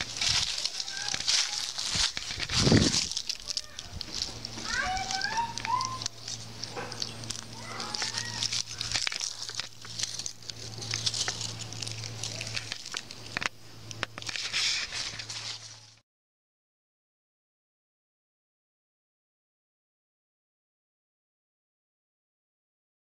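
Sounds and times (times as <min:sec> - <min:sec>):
crackling rustling noise: 0:00.0 - 0:16.0
low electrical hum of heat pump: 0:00.0 - 0:16.0.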